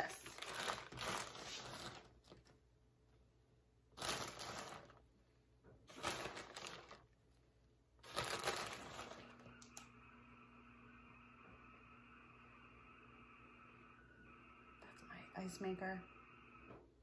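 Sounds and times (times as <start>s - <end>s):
ice maker humming: 0.0s - 2.4s, 5.9s - 7.2s, 8.0s - 17.0s
plastic packaging crinkling: 0.0s - 2.5s, 4.0s - 5.0s, 5.9s - 7.2s, 8.0s - 9.5s.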